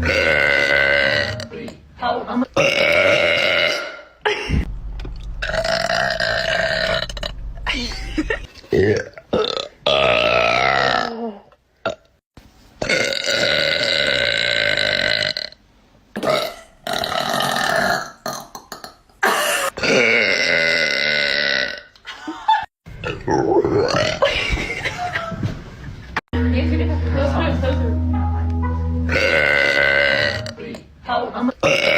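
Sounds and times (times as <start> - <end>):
person burping: 0.0 - 1.5, 2.6 - 4.7, 5.4 - 12.1, 12.8 - 15.6, 16.2 - 21.9, 29.1 - 30.6, 31.6 - 31.9.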